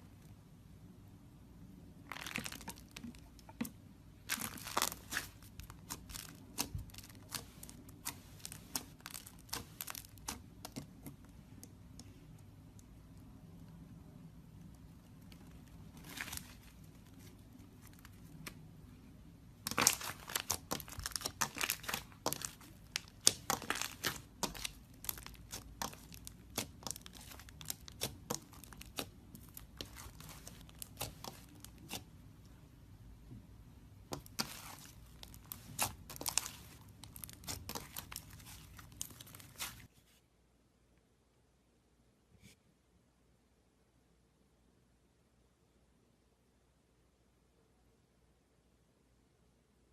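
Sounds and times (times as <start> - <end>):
slime clicking and crackling: 2.1 - 3.6, 4.2 - 12.1, 19.6 - 32.2, 34.0 - 39.9.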